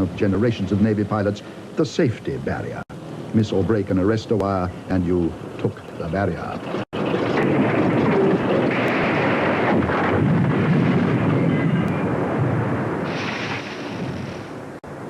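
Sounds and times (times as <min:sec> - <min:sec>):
aircraft engine rumble: 0:06.6 - 0:13.2
wind rush: 0:06.6 - 0:15.0.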